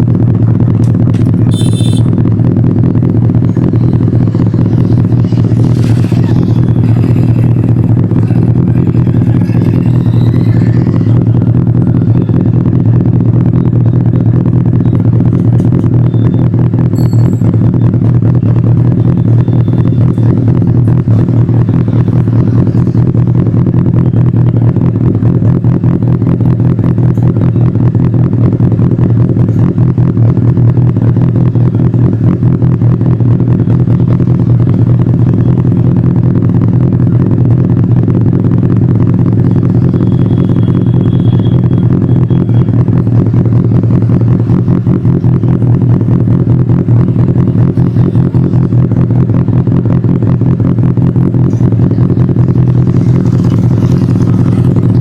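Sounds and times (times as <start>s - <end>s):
motorcycle engine idling: 0.0s - 55.0s.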